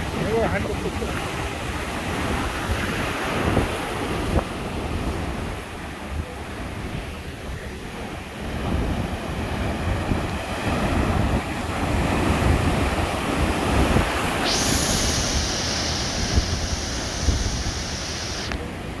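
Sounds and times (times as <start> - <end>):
wind buffeting microphone: 13.7 - 18.6
sharp high hiss: 13.9 - 18.6.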